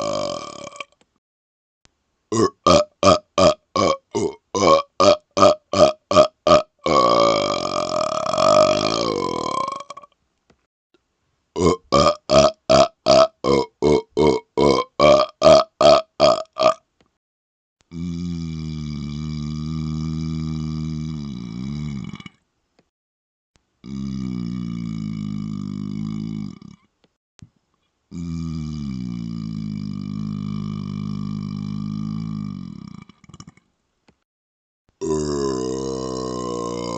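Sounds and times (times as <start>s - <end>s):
man burping: 0.0s - 1.0s, 2.3s - 10.1s, 11.6s - 16.8s, 17.9s - 22.4s, 23.8s - 26.8s, 28.1s - 33.6s, 35.0s - 36.9s.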